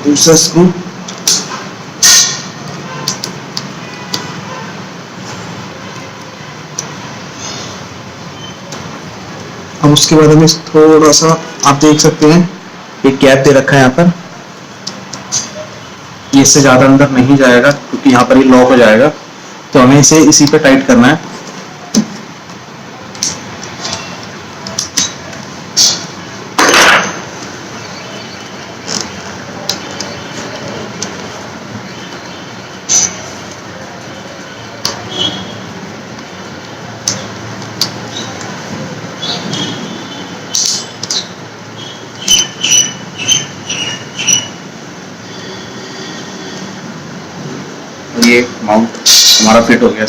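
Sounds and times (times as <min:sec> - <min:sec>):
sharp knocks: 0:26.6 - 0:27.3.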